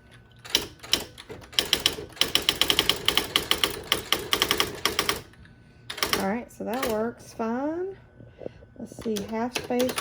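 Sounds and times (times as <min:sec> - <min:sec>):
electronic typewriter printing: 0:00.4 - 0:05.3, 0:05.9 - 0:07.0, 0:09.0 - 0:10.0.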